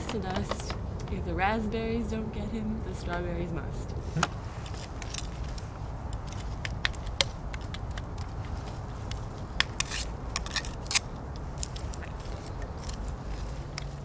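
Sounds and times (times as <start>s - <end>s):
soil scraping and crunching: 4.0s - 14.0s.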